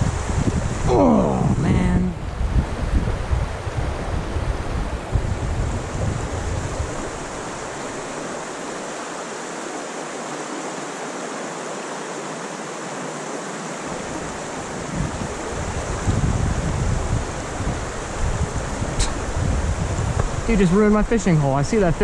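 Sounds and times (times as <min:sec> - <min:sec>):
wind buffeting microphone: 0:00.0 - 0:08.9, 0:13.9 - 0:22.0
creek water rushing: 0:00.0 - 0:22.0.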